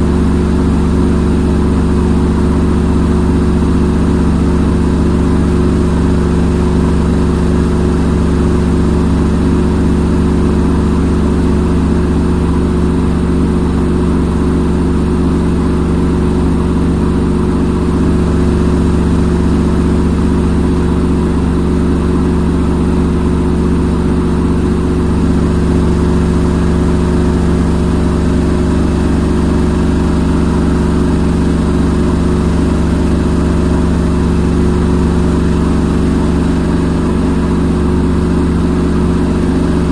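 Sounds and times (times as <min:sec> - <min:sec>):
washing machine spinning: 0:00.0 - 0:39.9.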